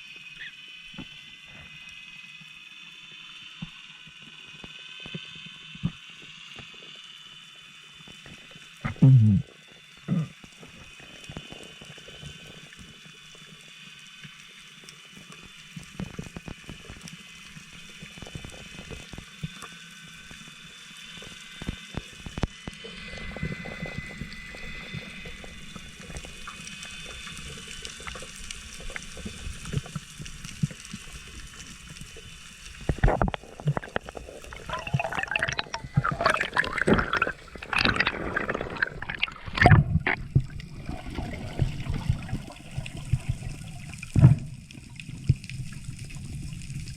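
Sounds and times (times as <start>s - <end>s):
water splashing and gurgling: 8.8s - 12.7s, 21.7s - 46.9s
clicks and crackles: 24.8s - 40.7s.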